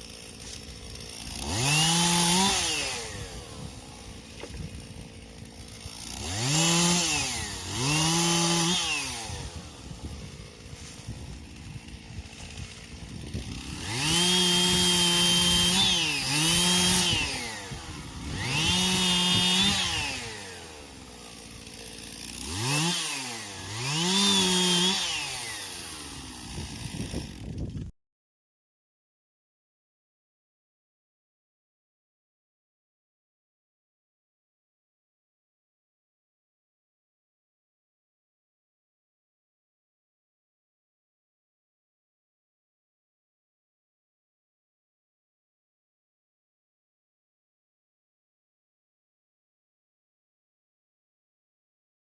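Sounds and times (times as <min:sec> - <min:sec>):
chainsaw revving and idling: 0:00.0 - 0:27.9.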